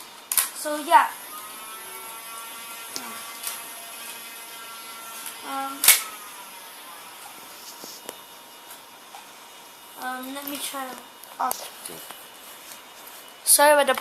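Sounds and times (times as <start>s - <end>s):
flywheel motors whirring: 0.0s - 14.0s
toy blaster clicks: 0.3s - 0.6s, 5.2s - 6.2s.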